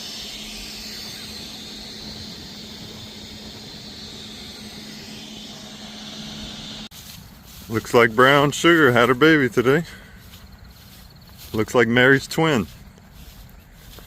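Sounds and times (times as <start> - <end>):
hiss: 0.0 - 8.8
steady mechanical hum: 0.0 - 14.0.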